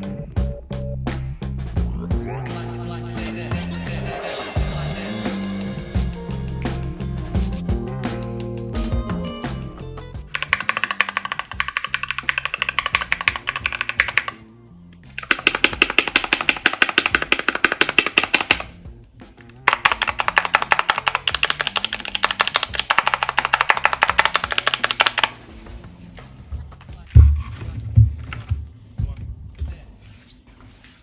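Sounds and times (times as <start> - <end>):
background music: 0.0 - 29.9
fast typing on mechanical keyboard: 10.3 - 14.4, 15.2 - 18.7, 19.6 - 25.4.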